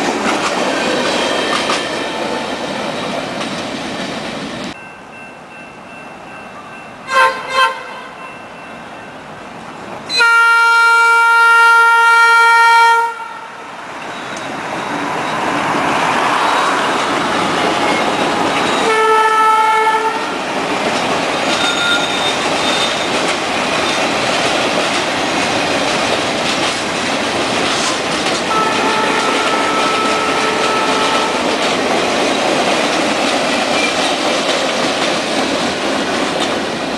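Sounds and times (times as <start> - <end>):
freight train rumbling past: 0.0 - 36.9
diesel locomotive horn: 7.0 - 8.4, 10.1 - 13.8, 18.6 - 20.5, 28.4 - 31.7
wheel clatter on rails: 20.5 - 36.9.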